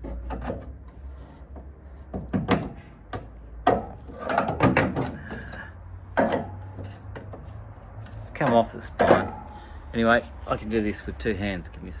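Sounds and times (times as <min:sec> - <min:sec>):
tool scraping and clicking on metal: 0:06.2 - 0:09.6.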